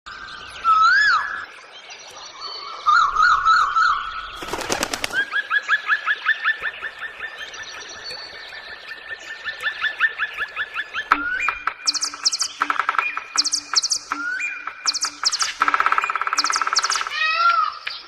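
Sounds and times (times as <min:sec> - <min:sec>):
birds calling: 0:00.1 - 0:18.0
short repeated bird chirps: 0:11.0 - 0:18.0
bird rattle call: 0:14.9 - 0:17.4.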